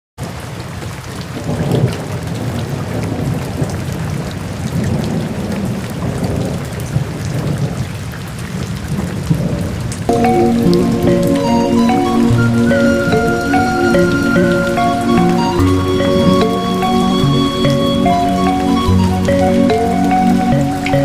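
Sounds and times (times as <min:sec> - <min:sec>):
soft music with held tones: 0:10.1 - 0:21.0
waterfall rushing: 0:10.1 - 0:21.0.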